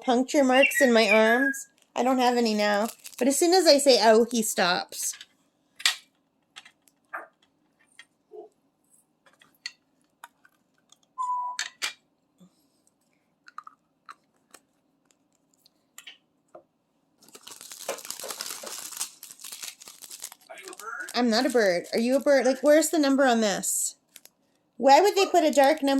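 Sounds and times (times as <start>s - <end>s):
plastic bag crinkling: 1.7s - 3.8s, 17.2s - 23.2s, 24.0s - 24.4s, 25.1s - 25.9s.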